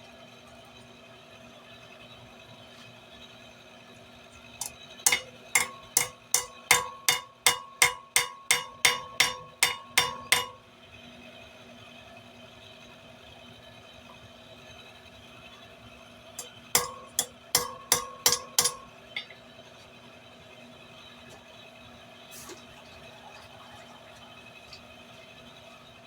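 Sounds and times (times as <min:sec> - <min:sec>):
faint steady hum: 0:00.0 - 0:26.0
hammer striking steel on anvil: 0:04.6 - 0:10.6, 0:16.4 - 0:19.4.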